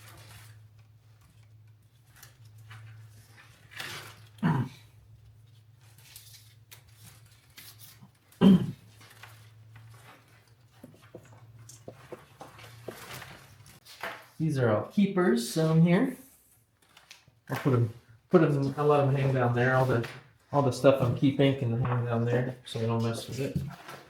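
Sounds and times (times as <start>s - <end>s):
wires rustling and clicking: 0.0s - 4.4s, 5.0s - 14.4s, 16.6s - 20.4s.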